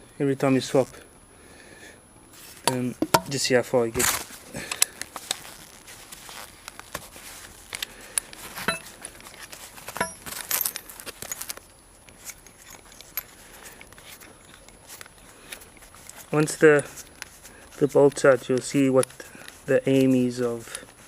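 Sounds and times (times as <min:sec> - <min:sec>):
tools clicking and clinking: 0:08.7 - 0:09.0, 0:10.0 - 0:11.6.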